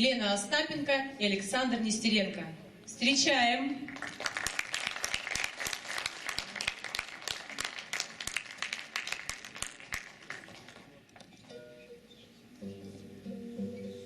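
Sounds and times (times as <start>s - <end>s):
audience applauding: 3.9s - 11.0s.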